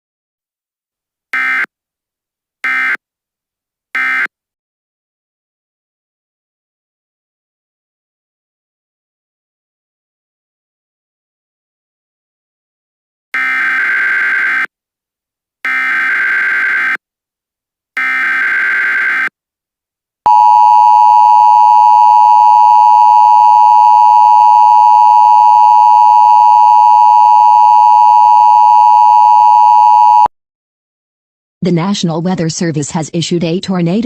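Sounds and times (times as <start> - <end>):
steady attention tone: 20.3 - 30.3.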